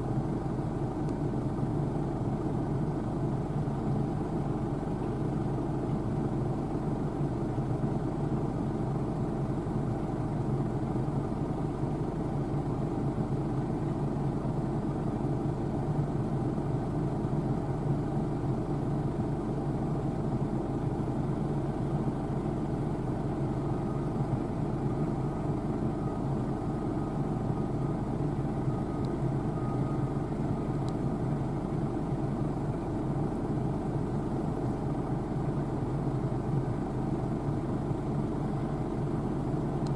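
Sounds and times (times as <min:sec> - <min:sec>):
combine harvester drone: 0:00.0 - 0:39.9
faint higher whine: 0:19.5 - 0:39.9.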